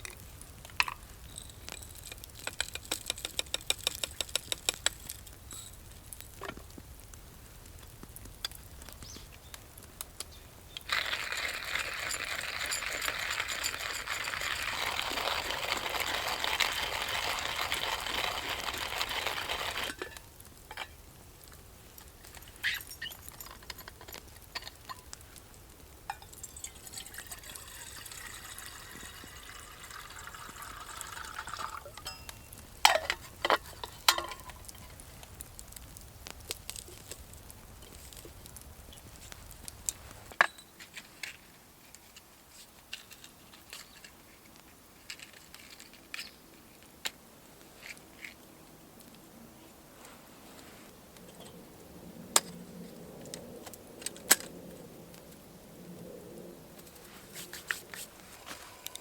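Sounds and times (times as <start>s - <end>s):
water pouring into container: 26.6s - 32.0s.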